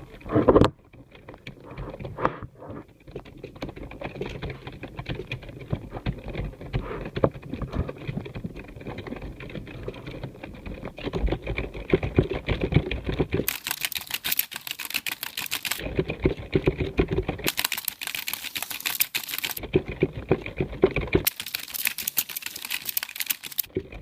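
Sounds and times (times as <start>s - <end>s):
fast typing on keyboard: 2.8s - 24.0s.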